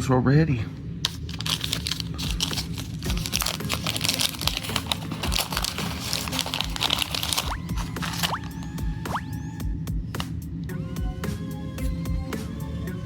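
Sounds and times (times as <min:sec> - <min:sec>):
paper wrapper crinkling: 0:01.0 - 0:08.8.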